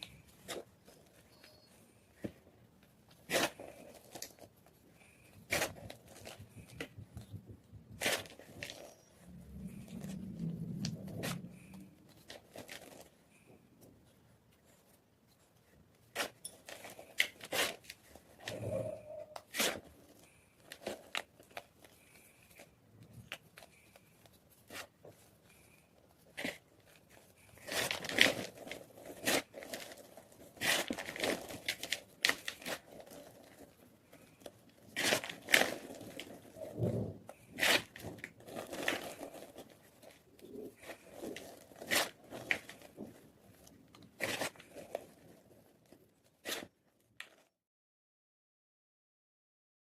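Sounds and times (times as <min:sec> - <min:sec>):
chalk block crunching: 0:03.0 - 0:07.3, 0:14.6 - 0:46.7.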